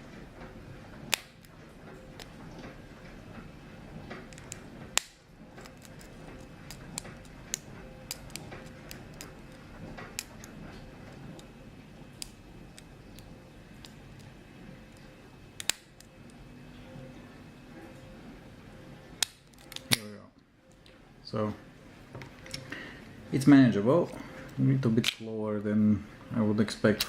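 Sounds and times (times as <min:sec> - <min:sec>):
light scraping in padlock: 0:05.6 - 0:07.4.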